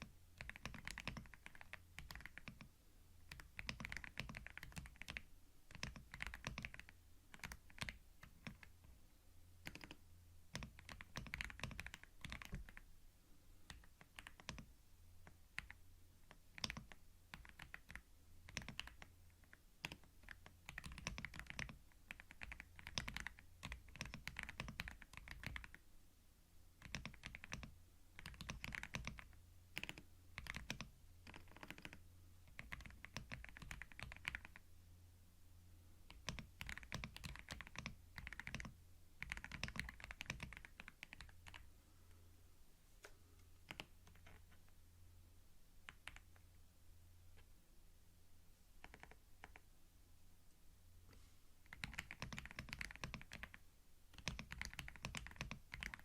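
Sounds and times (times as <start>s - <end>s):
typing on computer keyboard: 0.0s - 2.7s, 3.3s - 8.8s, 9.6s - 12.8s, 13.7s - 25.8s, 26.8s - 34.6s, 36.1s - 41.7s, 43.6s - 44.6s, 45.9s - 46.4s, 48.8s - 49.6s, 51.7s - 56.0s.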